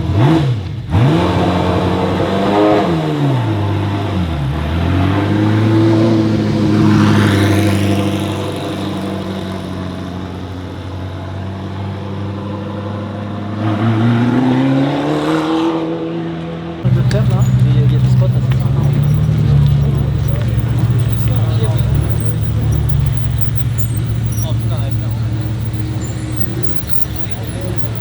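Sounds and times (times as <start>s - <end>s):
sports car engine revving: 0.0s - 11.0s, 16.8s - 28.0s.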